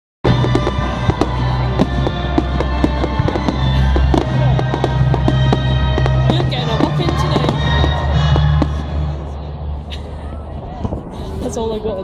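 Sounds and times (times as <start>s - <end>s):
fireworks bangs and crackles: 0.2s - 12.0s
music with low bass line: 0.3s - 9.9s.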